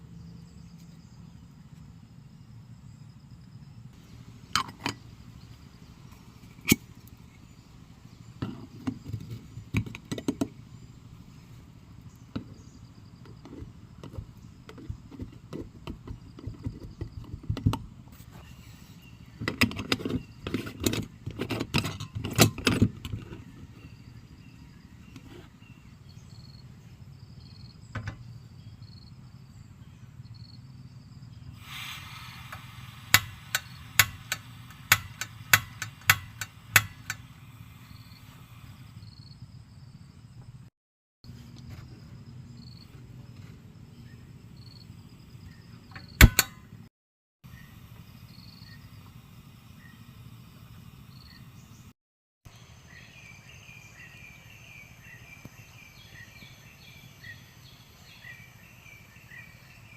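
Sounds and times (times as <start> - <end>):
steady low hum: 0.0 - 19.4
sharp clicks and knocks: 32.5 - 37.3, 45.9 - 46.6.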